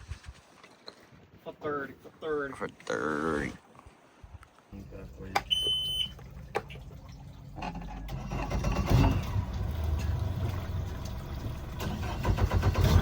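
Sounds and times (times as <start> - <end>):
engine rumbling: 4.8 - 13.0.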